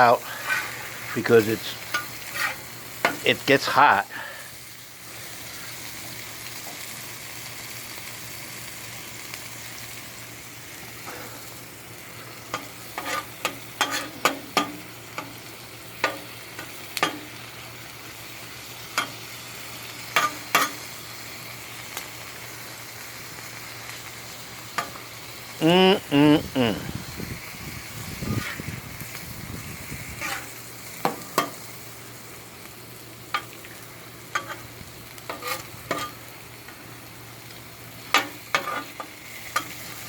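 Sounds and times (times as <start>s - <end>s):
food sizzling on a griddle: 0.0s - 40.0s
spatula clinking and scraping: 0.3s - 3.3s, 12.5s - 15.4s, 20.2s - 20.8s, 30.2s - 31.6s, 34.3s - 34.7s, 35.3s - 36.2s, 38.1s - 39.9s.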